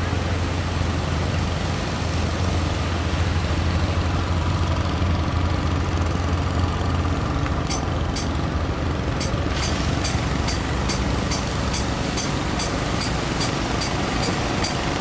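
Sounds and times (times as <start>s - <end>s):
boat engine humming: 0.0s - 15.0s
wind: 0.0s - 15.0s
short high ticks: 7.7s - 8.3s, 9.2s - 14.8s.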